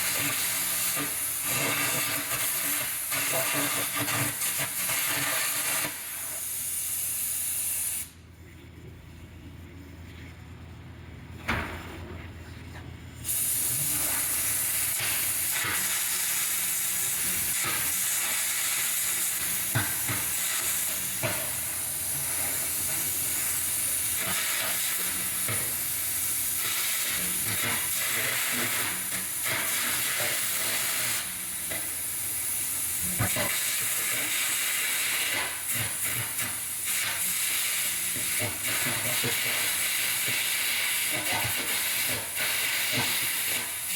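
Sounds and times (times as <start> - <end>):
cutting torch hissing and crackling: 0.0 - 8.2, 13.2 - 43.9
low machine hum: 8.1 - 15.0.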